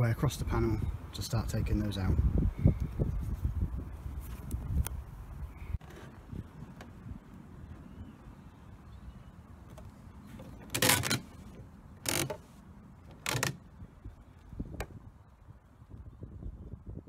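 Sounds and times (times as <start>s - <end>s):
metal bar scraping inside car door: 10.4s - 11.5s.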